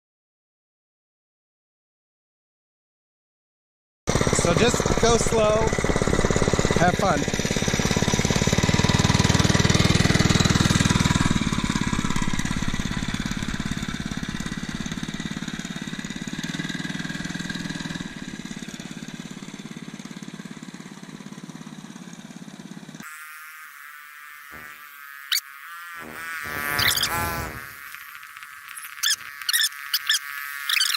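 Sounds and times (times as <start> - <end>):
small engine running: 4.1 - 30.9
short high squeaks: 24.6 - 30.9.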